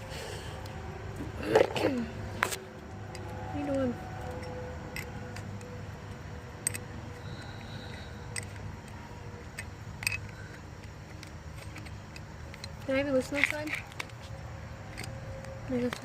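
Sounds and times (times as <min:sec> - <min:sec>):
low steady hum: 0:00.0 - 0:16.0
hand tools clicking: 0:02.4 - 0:14.3.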